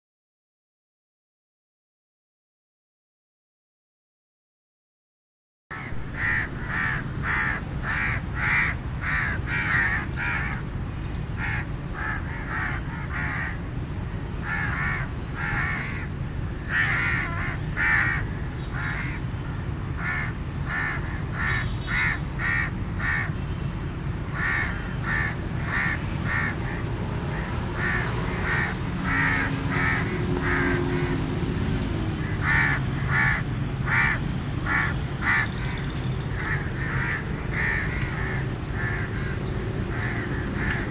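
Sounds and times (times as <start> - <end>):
crows cawing: 5.7 - 10.7, 11.4 - 13.6, 14.4 - 23.4, 24.3 - 31.3, 32.2 - 40.9
low background rumble: 5.8 - 21.8.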